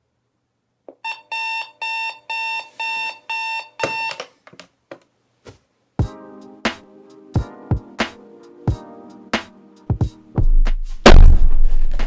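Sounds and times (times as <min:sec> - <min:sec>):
electronic alarm clock beeping: 0:01.1 - 0:04.2
sharp knock: 0:11.0 - 0:12.0.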